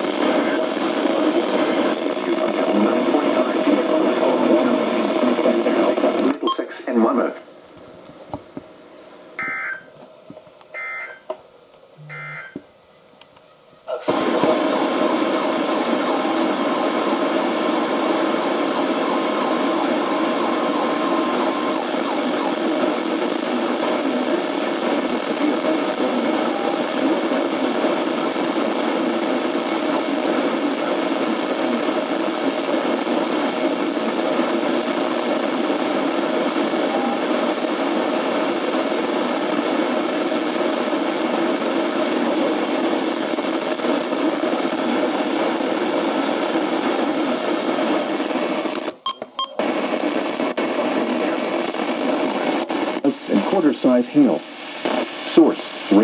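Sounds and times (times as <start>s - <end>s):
radio static hiss: 0.0s - 56.0s.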